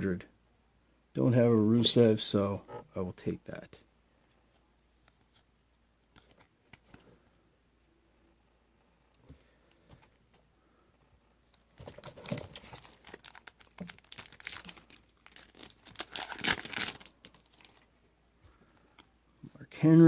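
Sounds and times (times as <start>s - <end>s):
wrapper tearing and crinkling: 11.6s - 17.9s.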